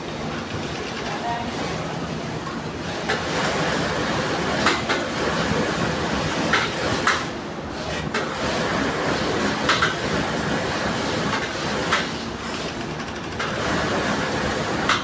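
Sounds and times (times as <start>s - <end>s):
sharp clicks and clacks: 6.5s - 7.3s, 9.6s - 10.0s.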